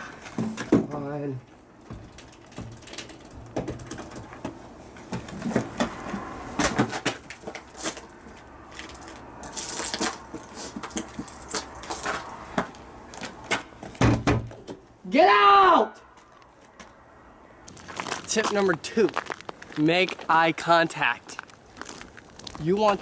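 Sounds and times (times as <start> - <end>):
irregular knocks and clatters: 1.5 - 6.0.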